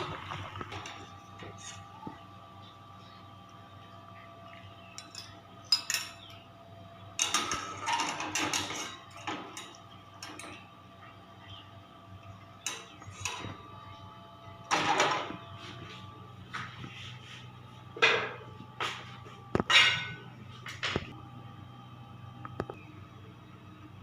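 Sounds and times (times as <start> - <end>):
utensils clinking against pot: 0.0 - 2.2, 4.9 - 6.4, 7.2 - 10.6, 12.6 - 13.5, 19.6 - 21.0.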